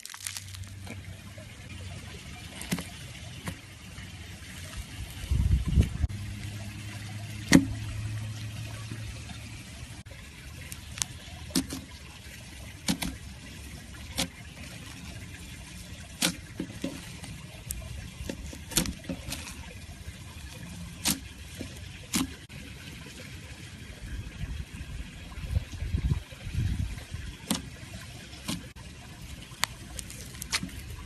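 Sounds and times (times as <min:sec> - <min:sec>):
slime squishing: 0:00.0 - 0:01.3, 0:10.4 - 0:22.5, 0:26.9 - 0:31.0.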